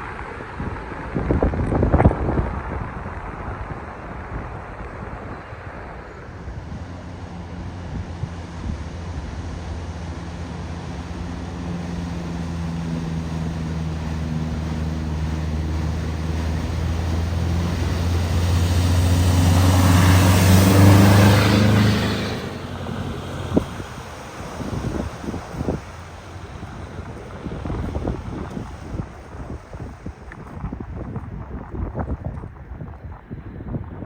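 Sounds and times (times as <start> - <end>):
car engine hum: 6.4 - 30.4
rush of spraying water: 6.6 - 30.7.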